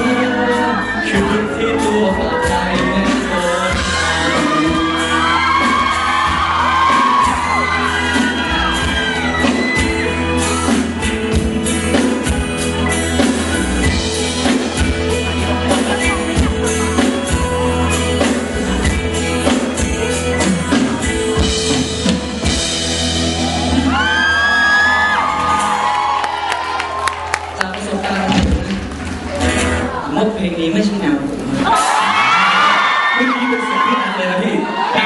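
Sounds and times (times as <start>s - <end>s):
person singing: 0.0s - 10.7s
band song with drums and bass: 0.0s - 33.0s.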